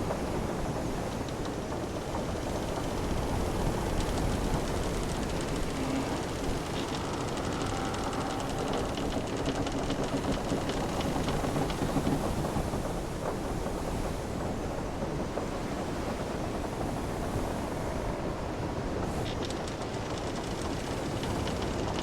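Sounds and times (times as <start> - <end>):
ocean waves and wind: 0.0 - 22.0
ship timbers creaking: 3.8 - 12.2.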